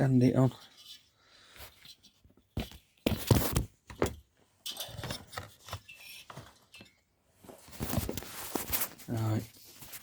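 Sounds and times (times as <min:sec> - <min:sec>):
knocks and clatters on workbench: 0:02.6 - 0:06.9.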